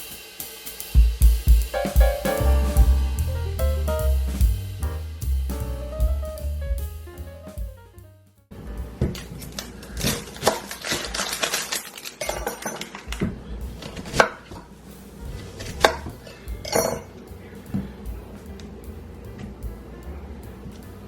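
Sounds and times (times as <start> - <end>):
dishes and pots clattering: 9.0 - 14.6, 15.6 - 17.1.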